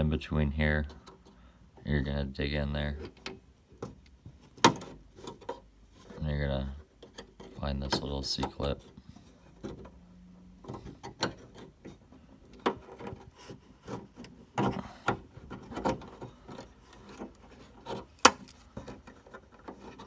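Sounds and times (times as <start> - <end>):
screwdriver scraping metal: 10.6 - 20.0.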